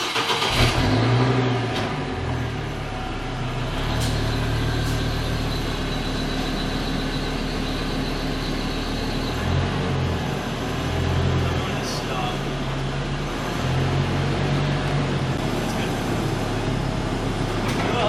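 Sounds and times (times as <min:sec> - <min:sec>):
pickup engine idling: 0:02.1 - 0:09.5.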